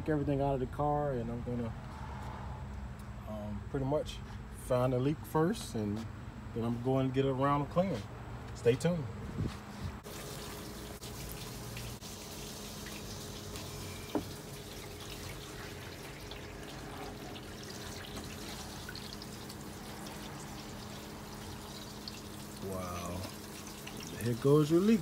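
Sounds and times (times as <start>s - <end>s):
water splashing and trickling: 10.0s - 25.0s.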